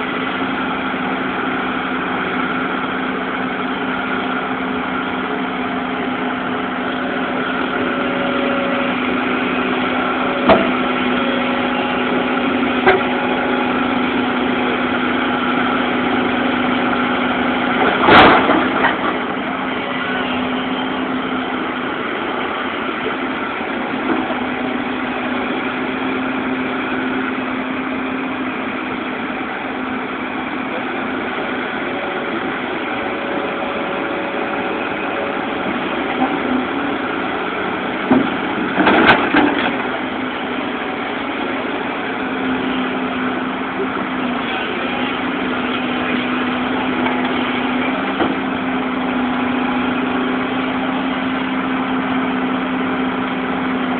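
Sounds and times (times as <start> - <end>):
bulldozer diesel engine running: 0.0 - 53.9
loud metal clank: 17.8 - 19.2.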